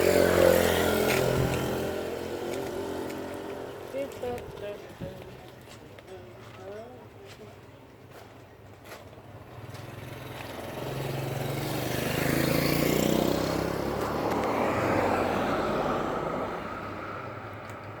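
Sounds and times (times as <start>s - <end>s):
motor passing by: 10.0s - 15.8s.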